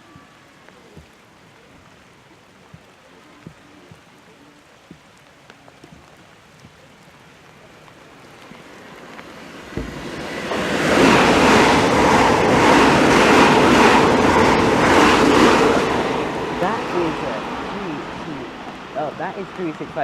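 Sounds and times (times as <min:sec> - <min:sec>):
electric train passing: 0:08.3 - 0:20.0
low thump: 0:09.7 - 0:10.2.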